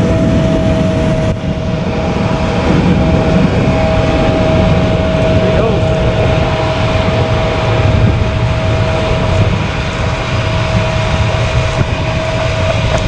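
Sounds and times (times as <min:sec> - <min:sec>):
diesel engine rumbling under load: 0:00.0 - 0:13.0
high machinery whine: 0:00.0 - 0:13.0.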